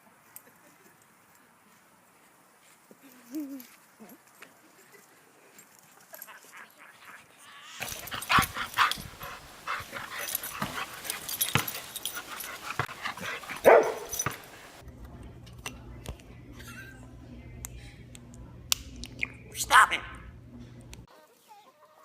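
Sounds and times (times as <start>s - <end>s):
dog barking and yelping: 7.8s - 14.8s
scuffling: 7.8s - 14.8s.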